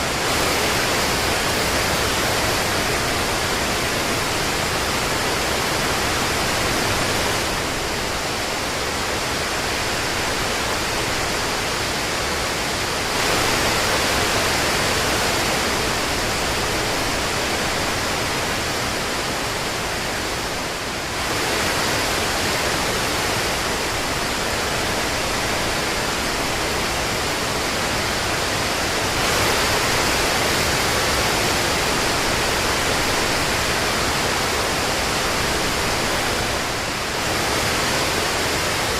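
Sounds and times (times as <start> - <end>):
heavy rain: 0.0 - 38.9.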